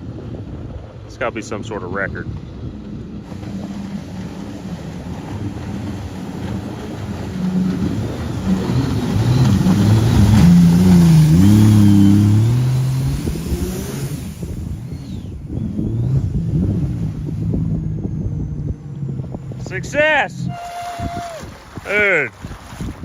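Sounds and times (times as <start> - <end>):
jet boat engine running hard: 0.0 - 23.0.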